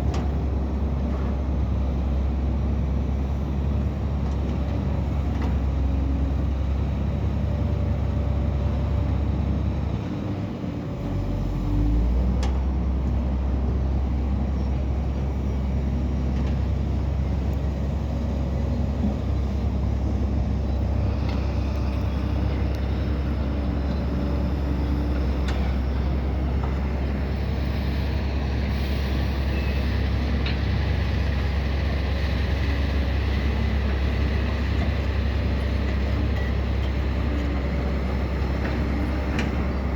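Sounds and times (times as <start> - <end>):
heavy diesel engines rumbling: 0.0 - 39.9.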